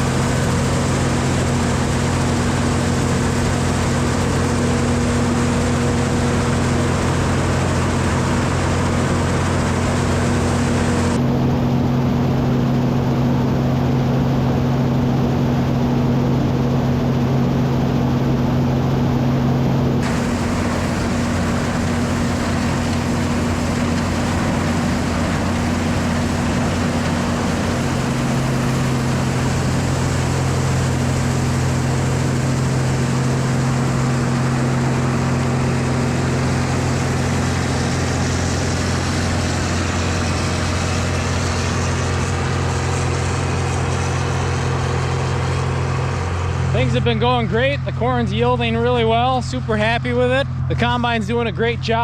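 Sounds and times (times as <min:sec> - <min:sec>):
combine engine drone: 0:00.0 - 0:52.0
threshing works rushing: 0:19.9 - 0:48.7.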